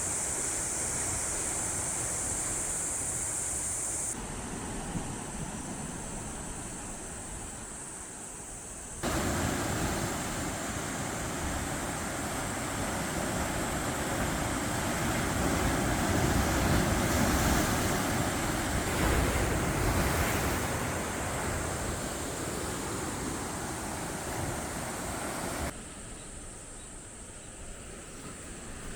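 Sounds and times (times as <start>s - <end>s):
surf washing against rocky shore: 9.0s - 25.7s.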